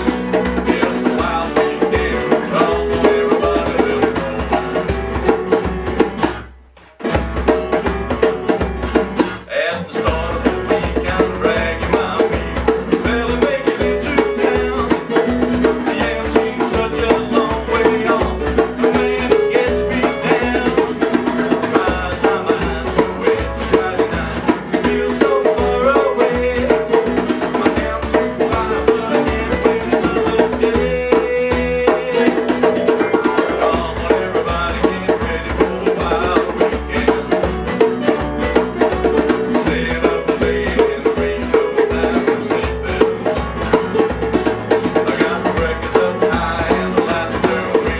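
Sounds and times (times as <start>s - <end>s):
percussion beat: 0.0s - 47.9s
strummed acoustic guitars: 0.0s - 47.9s.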